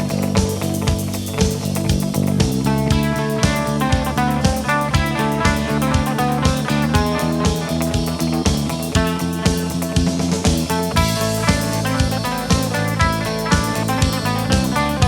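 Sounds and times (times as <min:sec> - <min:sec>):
bass guitar: 0:00.0 - 0:15.0
electric guitars: 0:00.0 - 0:15.0
steady drum beat: 0:00.0 - 0:15.0.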